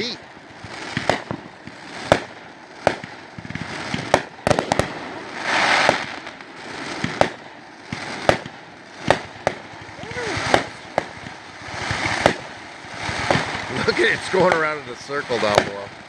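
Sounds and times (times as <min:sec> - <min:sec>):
fireworks popping: 0:00.0 - 0:16.0
hissing crackle: 0:00.0 - 0:16.0.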